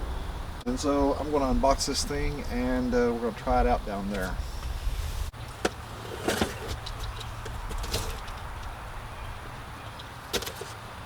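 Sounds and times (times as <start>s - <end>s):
steady low rumble: 0.0s - 5.4s
cardboard box rustling and scraping: 4.6s - 8.4s.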